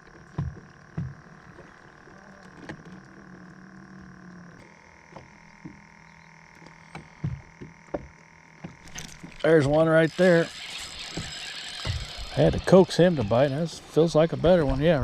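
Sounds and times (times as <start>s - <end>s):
electric motor whining: 0.0s - 15.0s
knocks against boat: 0.3s - 1.7s, 6.9s - 9.4s.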